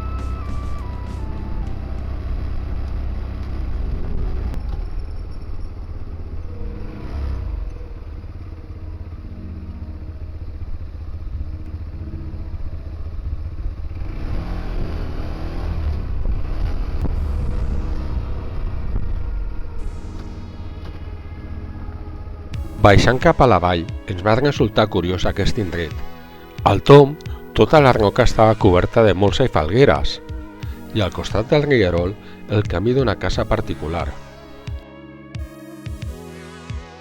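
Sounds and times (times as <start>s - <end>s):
motorcycle engine running: 0.0s - 36.8s
wind rumble on microphone: 10.3s - 21.6s.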